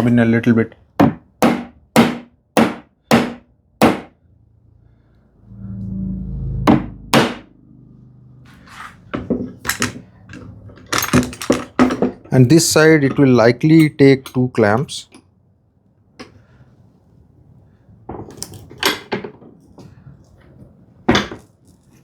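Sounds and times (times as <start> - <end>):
sharp knocks on wooden frame: 1.0 - 4.1, 6.7 - 7.4.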